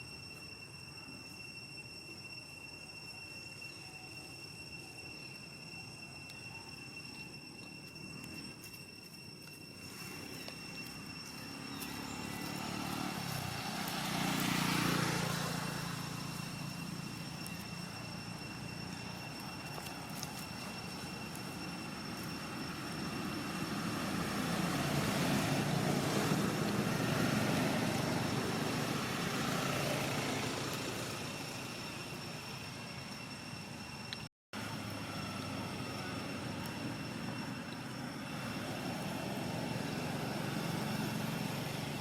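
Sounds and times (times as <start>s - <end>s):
steady high-pitched tone: 0.0s - 42.0s
engine passing: 9.8s - 32.7s, 34.6s - 42.0s.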